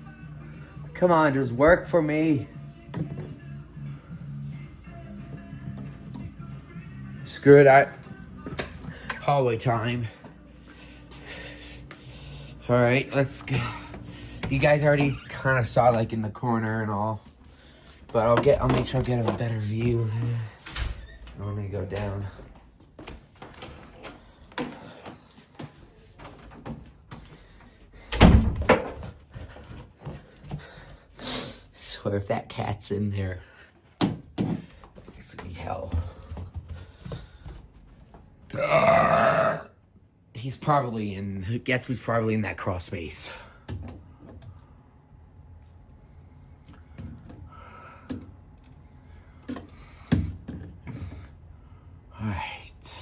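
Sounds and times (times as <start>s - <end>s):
footsteps going down stairs: 13.2s - 32.0s, 32.8s - 38.9s.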